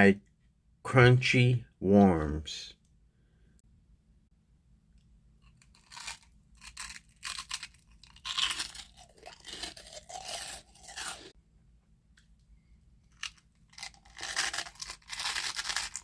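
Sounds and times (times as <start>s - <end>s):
crunchy candy being chewed: 5.4s - 11.3s, 13.1s - 16.0s.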